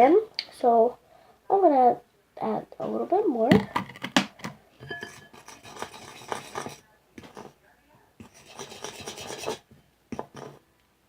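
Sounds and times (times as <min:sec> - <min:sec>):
fork scraping through glue: 0:05.1 - 0:07.5, 0:08.2 - 0:09.6, 0:10.2 - 0:10.6.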